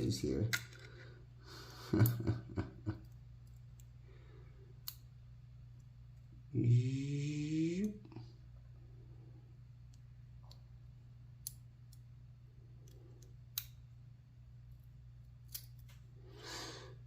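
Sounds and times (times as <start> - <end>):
steady low hum: 0.0 - 17.0
small metal clicks: 15.4 - 16.0.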